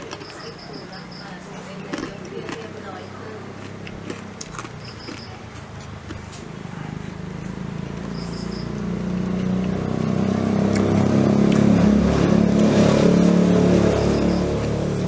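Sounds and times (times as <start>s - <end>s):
vehicle engine approaching: 0.0s - 15.0s
short high chirps: 8.1s - 8.8s.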